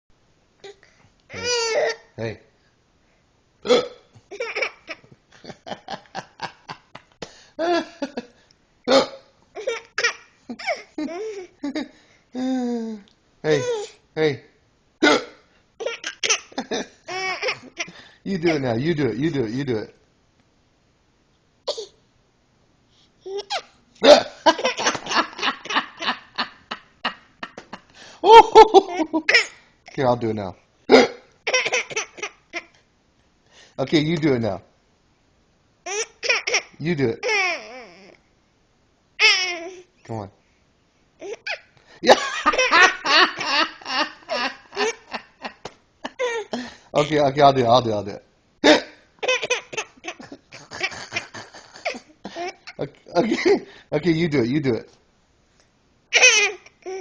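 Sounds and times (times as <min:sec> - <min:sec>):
pretend hiccups: 0:03.6 - 0:04.1, 0:08.9 - 0:09.3, 0:15.0 - 0:15.5, 0:23.5 - 0:24.3, 0:30.9 - 0:31.3
person laughing heartily: 0:05.3 - 0:08.4, 0:10.5 - 0:13.0, 0:16.6 - 0:18.0, 0:24.0 - 0:29.5, 0:42.0 - 0:46.8, 0:49.9 - 0:53.7
laughing bursts: 0:48.6 - 0:53.6.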